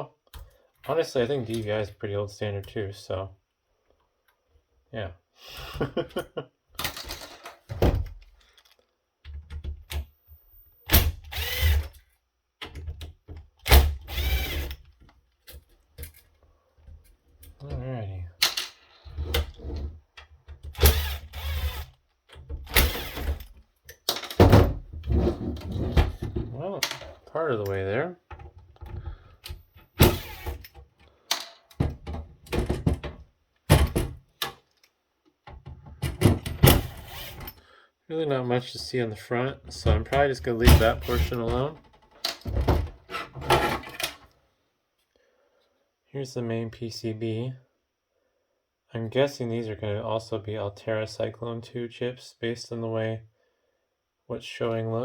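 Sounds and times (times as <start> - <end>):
cordless drill whine: 11.3 - 11.8, 14.1 - 14.7, 20.8 - 21.9, 22.8 - 23.4, 30.0 - 30.6, 37.0 - 37.5, 40.8 - 41.5.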